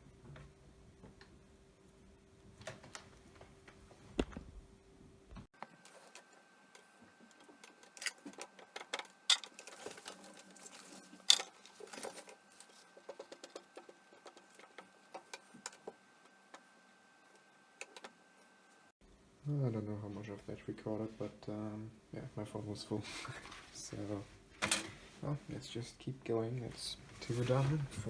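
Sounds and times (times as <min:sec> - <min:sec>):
small items clicking and tapping: 0:05.6 - 0:18.6.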